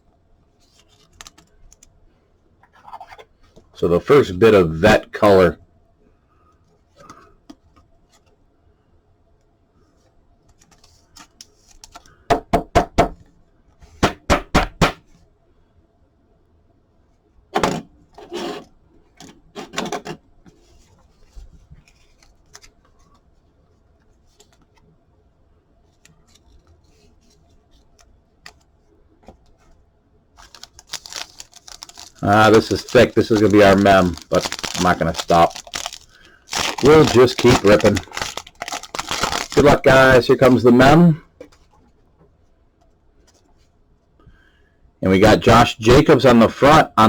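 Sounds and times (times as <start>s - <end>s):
faint steady hum: 0.0s - 47.0s
trading cards clicking and rustling: 0.8s - 1.9s, 10.5s - 12.2s, 30.4s - 40.6s.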